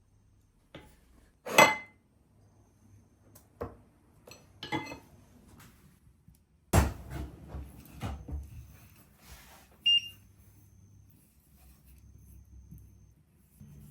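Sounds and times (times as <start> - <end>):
kitchenware clattering: 4.3 - 5.1
kitchenware knocking and clinking: 6.8 - 8.4.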